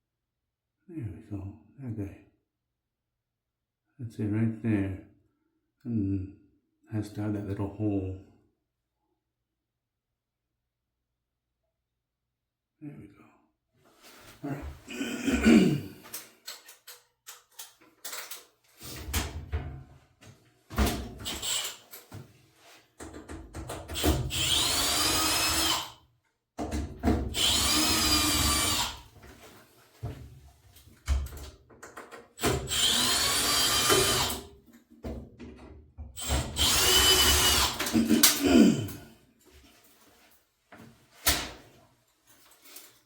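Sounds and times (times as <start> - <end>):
knocks and clatter of tool and screws: 16.1 - 19.8, 23.0 - 24.2, 31.0 - 32.8
power drill whine: 21.2 - 21.8, 24.0 - 25.9, 27.3 - 29.0, 32.4 - 34.4, 36.2 - 38.3.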